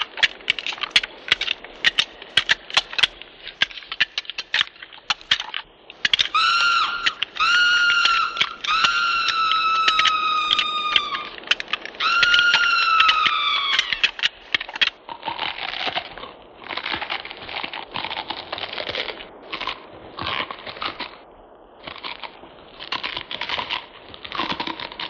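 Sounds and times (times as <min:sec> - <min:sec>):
crunching and cracking: 0:00.0 - 0:25.0
monster screech: 0:06.2 - 0:14.1.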